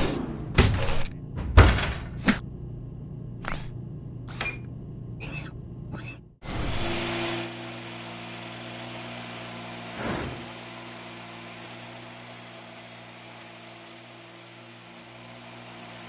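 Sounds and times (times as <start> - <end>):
robot sweeping whirs: 0.0 - 1.2
steady mechanical hum: 0.0 - 16.0.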